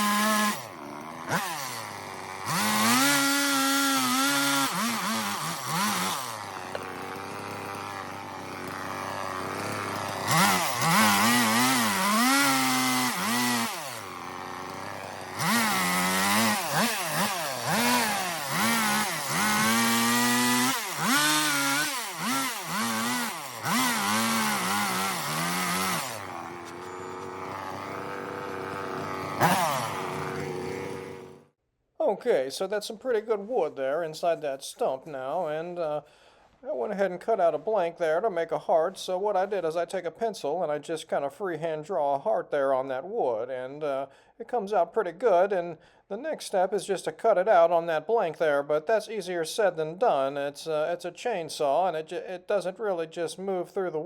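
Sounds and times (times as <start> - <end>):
chainsaw cutting log: 0.0 - 31.6.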